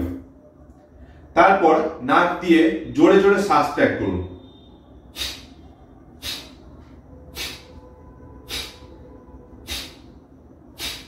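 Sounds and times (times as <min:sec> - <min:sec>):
forceful exhalations through nose: 0:05.1 - 0:05.6, 0:06.2 - 0:06.6, 0:07.3 - 0:07.8, 0:08.5 - 0:09.0, 0:09.6 - 0:10.2, 0:10.8 - 0:11.0.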